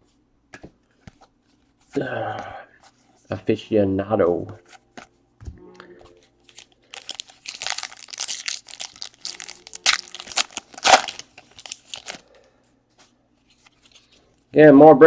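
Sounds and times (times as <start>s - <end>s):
wrapper being torn open: 6.5s - 12.2s.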